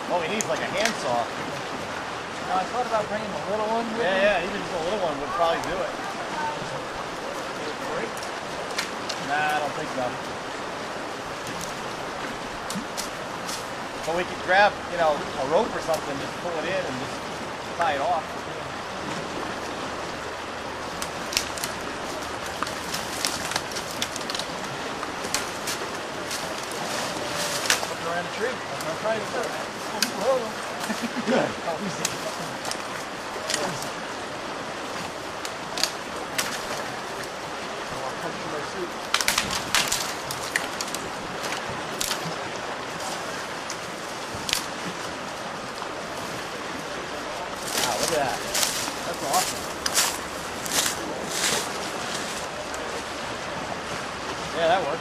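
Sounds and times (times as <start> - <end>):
water rushing over rapids: 0.0 - 55.0.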